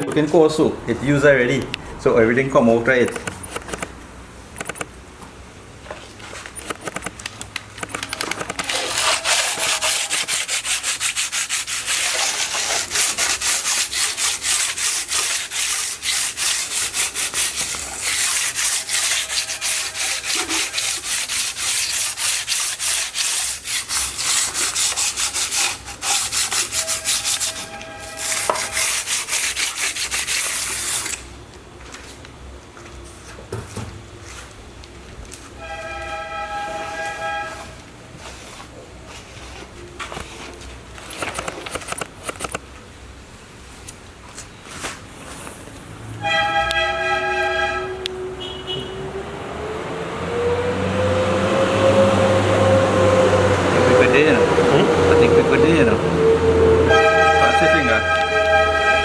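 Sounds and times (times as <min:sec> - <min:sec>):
abrasive rubbing on metal: 0:08.6 - 0:31.2.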